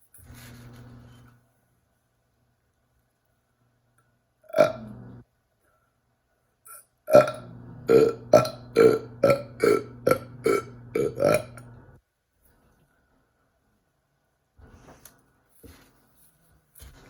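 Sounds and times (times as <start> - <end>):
person burping: 4.5 - 5.2, 6.7 - 11.8.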